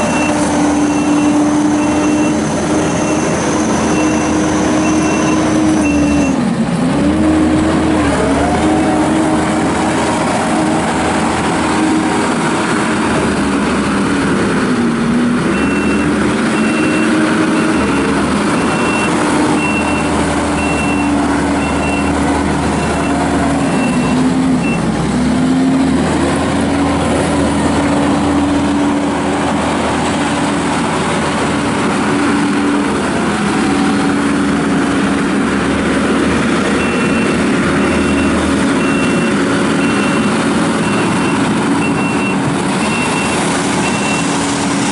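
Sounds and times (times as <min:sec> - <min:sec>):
loader diesel engine under load: 0:00.0 - 0:44.9
backup alarm beeping: 0:03.9 - 0:06.4, 0:15.5 - 0:24.9, 0:36.8 - 0:44.3.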